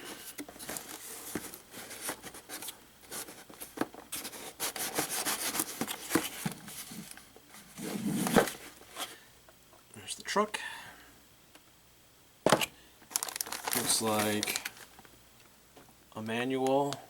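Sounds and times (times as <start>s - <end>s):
box packaging rustling: 0.0s - 9.2s, 12.5s - 15.0s.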